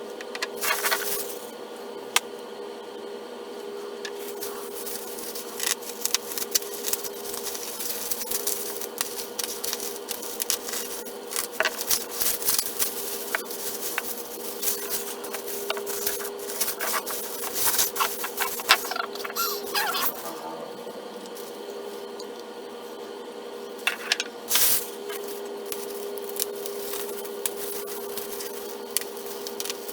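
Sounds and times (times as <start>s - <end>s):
plastic wrapping crinkling and tearing: 0.6s - 1.4s, 4.2s - 19.2s, 25.2s - 29.9s
steady low hum: 0.6s - 29.9s.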